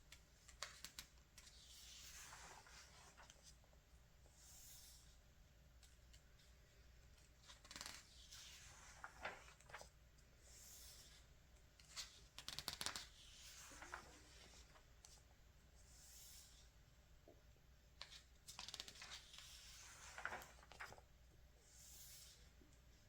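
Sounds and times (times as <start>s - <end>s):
magazine pages turning: 7.2s - 9.9s, 11.8s - 15.2s, 18.0s - 21.1s
crisp paper ticks: 7.6s - 8.0s, 12.4s - 13.1s, 20.2s - 21.0s.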